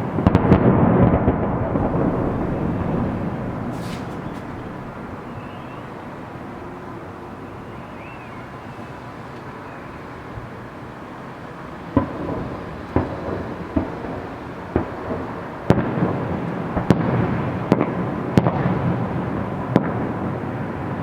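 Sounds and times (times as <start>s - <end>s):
firework shells bursting: 0.0s - 7.1s
continuous rumble: 0.0s - 8.2s.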